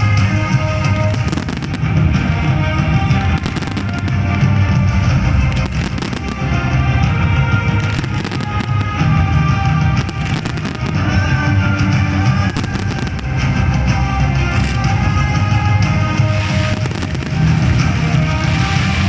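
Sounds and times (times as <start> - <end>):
fireworks banging: 0.0 - 19.0
loud music: 0.0 - 19.0.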